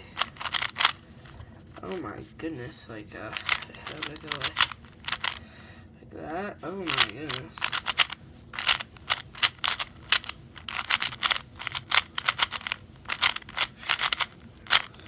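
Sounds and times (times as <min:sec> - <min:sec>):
puzzle cube plastic clicks: 0:00.2 - 0:01.0, 0:03.3 - 0:05.4, 0:06.9 - 0:15.0.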